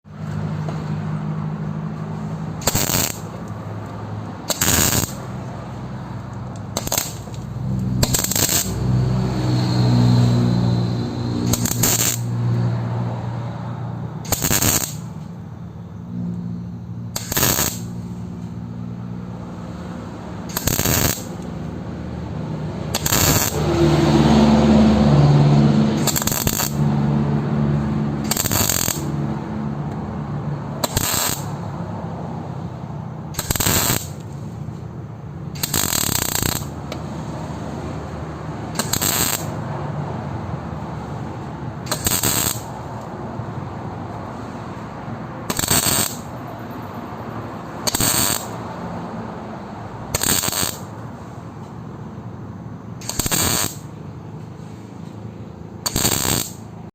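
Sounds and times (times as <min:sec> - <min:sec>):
welding arc crackling: 0:02.6 - 0:03.6, 0:04.4 - 0:12.6, 0:14.2 - 0:15.2, 0:17.1 - 0:18.4, 0:20.0 - 0:29.8, 0:30.8 - 0:31.7, 0:33.3 - 0:34.7, 0:35.5 - 0:37.0, 0:38.6 - 0:39.6, 0:41.4 - 0:42.8, 0:45.4 - 0:46.3, 0:47.8 - 0:48.6, 0:50.1 - 0:50.9, 0:53.0 - 0:53.9, 0:55.8 - 0:56.9.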